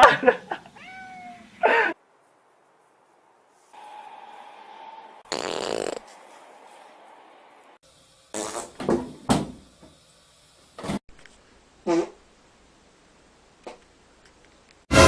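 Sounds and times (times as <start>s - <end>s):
loud raspy fart: 5.3s - 6.1s, 8.3s - 9.0s, 11.8s - 12.2s.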